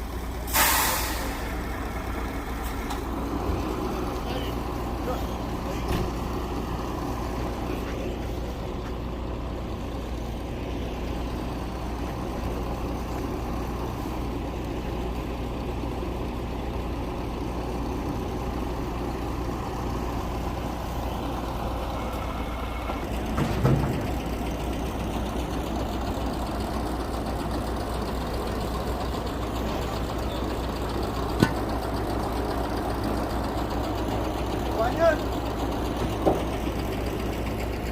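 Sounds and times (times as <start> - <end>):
truck engine idling: 0.0 - 37.9
clunk: 5.8 - 6.2, 22.8 - 24.4, 31.3 - 31.7, 36.0 - 36.6.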